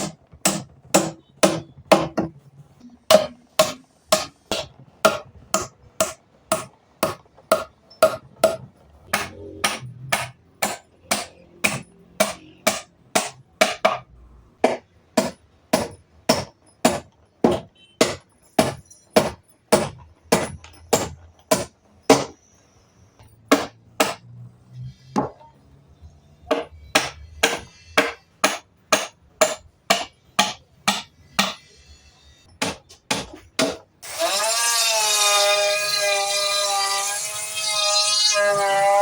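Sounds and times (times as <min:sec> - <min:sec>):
hammer striking wood: 0:00.0 - 0:02.4, 0:03.1 - 0:22.4, 0:23.5 - 0:24.2, 0:25.2 - 0:25.4, 0:26.5 - 0:31.7, 0:32.5 - 0:34.3.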